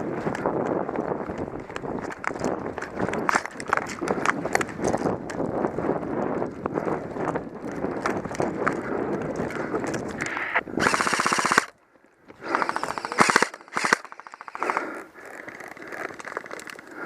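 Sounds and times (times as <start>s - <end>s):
airsoft gun full-auto bursts: 10.8s - 11.8s, 12.4s - 15.0s.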